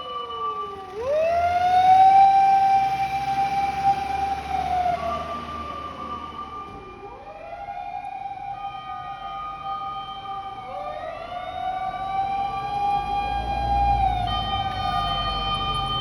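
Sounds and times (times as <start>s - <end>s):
steady high siren tone: 0.0s - 16.0s
siren winding up: 12.4s - 16.0s.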